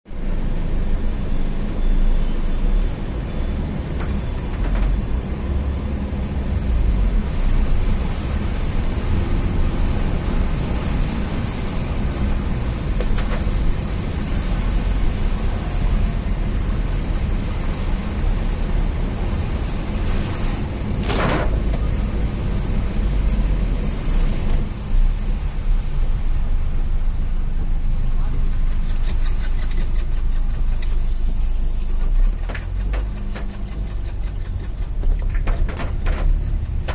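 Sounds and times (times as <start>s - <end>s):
heavy rain: 0.1s - 36.9s.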